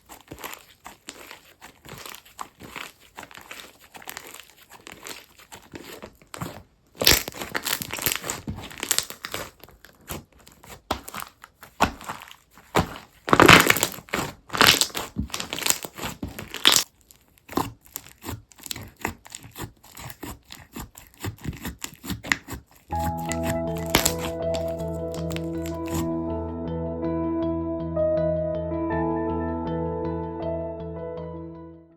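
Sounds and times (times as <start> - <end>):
crunchy slime crackling: 0.0 - 26.1
music: 22.9 - 31.9.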